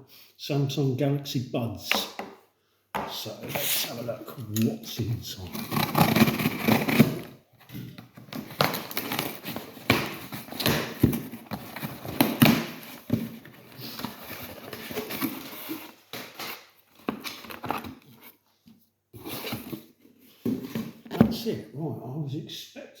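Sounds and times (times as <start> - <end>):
packaging rustling and scraping: 5.4 - 21.3.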